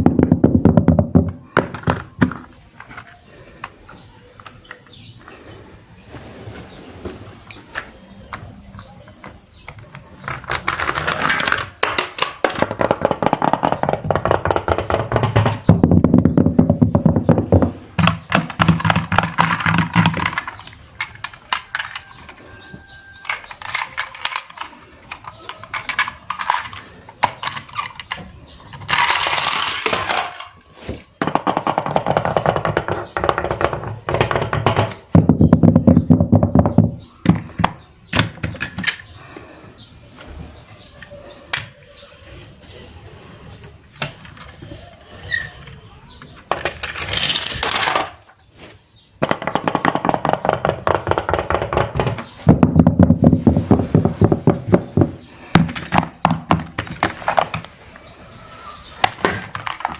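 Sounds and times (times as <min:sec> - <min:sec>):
rapid clicking and knocking: 0:00.0 - 0:02.5, 0:10.3 - 0:22.4, 0:31.2 - 0:39.0, 0:49.2 - 0:57.7.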